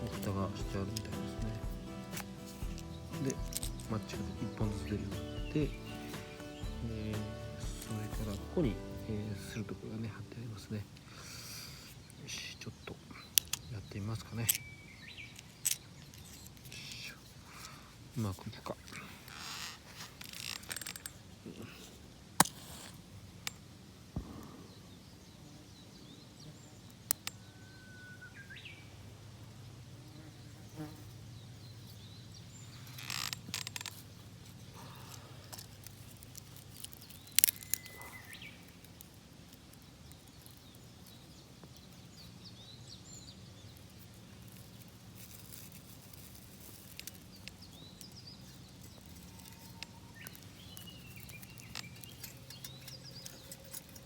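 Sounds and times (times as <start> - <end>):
matchbox clicks and taps: 0.0 - 4.4, 22.4 - 23.6, 35.5 - 41.9
match striking hiss: 0.0 - 9.8, 21.8 - 26.1
faint bird chirps: 24.2 - 29.1, 36.1 - 39.1, 46.9 - 54.0.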